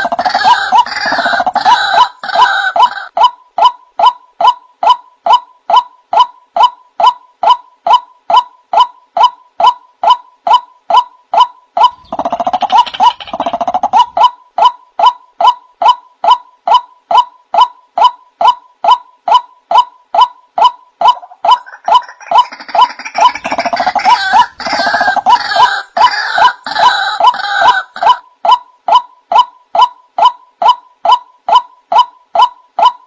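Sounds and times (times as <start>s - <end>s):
waterhen calling: 21.0s - 28.2s.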